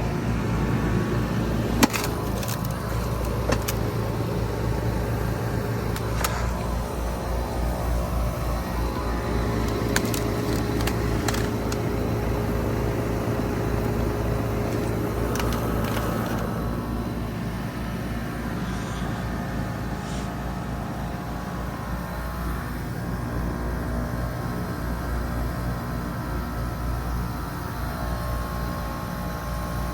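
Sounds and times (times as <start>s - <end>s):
heat pump compressor hum: 0.0s - 29.9s
sharp clicks: 8.7s - 12.2s, 13.8s - 16.6s.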